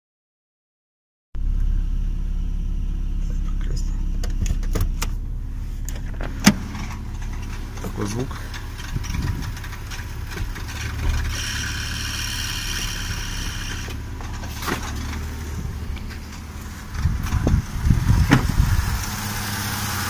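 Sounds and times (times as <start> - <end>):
car engine idling: 1.4 - 20.0
irregular engine rumble: 1.4 - 20.0
belt squealing: 10.7 - 14.7.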